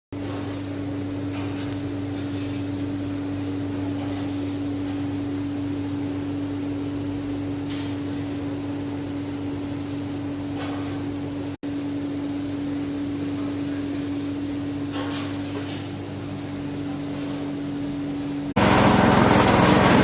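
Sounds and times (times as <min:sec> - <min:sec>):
slicing machine motor humming: 0:18.6 - 0:20.0.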